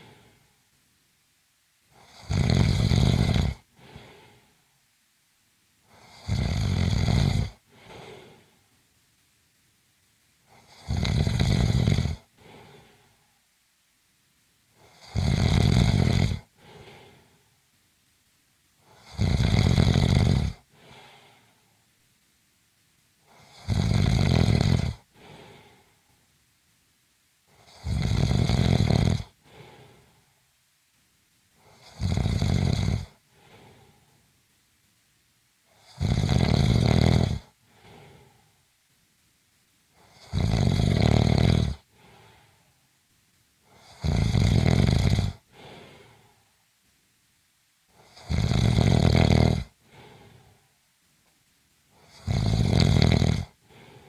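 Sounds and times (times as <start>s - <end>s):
loud snoring: 2.0s - 4.2s, 5.9s - 8.2s, 10.5s - 12.8s, 14.8s - 17.0s, 18.9s - 21.0s, 23.3s - 25.4s, 27.6s - 29.8s, 31.6s - 33.8s, 35.7s - 38.2s, 40.0s - 42.2s, 43.7s - 45.8s, 48.0s - 50.2s, 52.0s - 53.9s
faint short breath: 3.8s - 4.8s, 7.7s - 8.7s, 16.6s - 17.6s, 20.7s - 21.9s, 25.1s - 26.3s, 33.3s - 34.3s, 37.6s - 38.6s, 41.9s - 42.8s, 45.5s - 46.6s, 49.8s - 50.8s, 53.6s - 54.0s.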